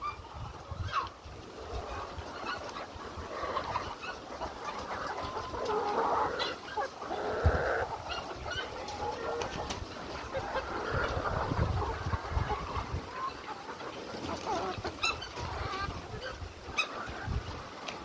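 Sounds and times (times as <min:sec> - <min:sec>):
chickens clucking: 0:00.0 - 0:18.0.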